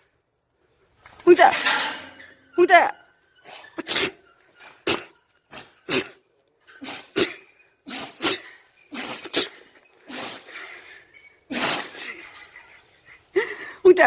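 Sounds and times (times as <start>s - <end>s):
pet sneezing and snorting: 3.4s - 10.6s, 11.5s - 12.2s.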